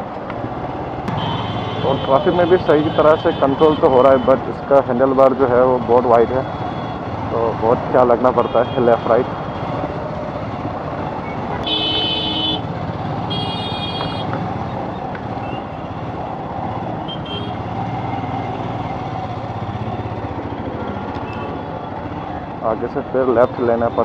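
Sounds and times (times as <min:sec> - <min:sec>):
vehicle horns honking: 0:01.1 - 0:04.4, 0:08.2 - 0:09.6, 0:11.5 - 0:12.7, 0:13.3 - 0:14.3, 0:17.1 - 0:17.6.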